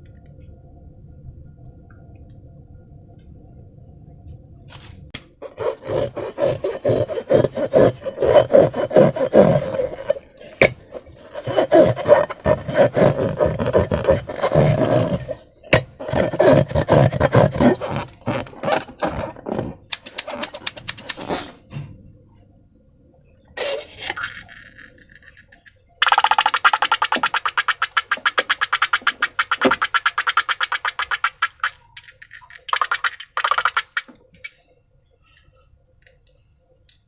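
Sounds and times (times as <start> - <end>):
squeaky balloon rubbing: 5.4 - 21.6.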